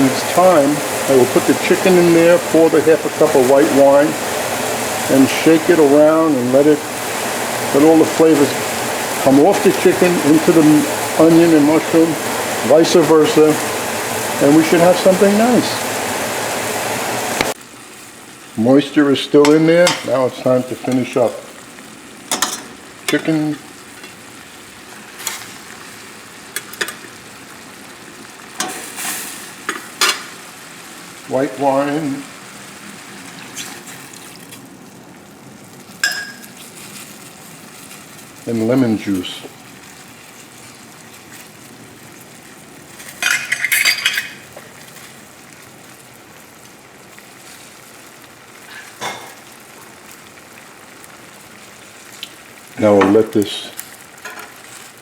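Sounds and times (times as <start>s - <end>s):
vegetables sizzling in a frying pan: 0.0s - 55.0s
cookware clattering: 22.3s - 23.3s, 36.0s - 36.5s, 43.1s - 44.5s.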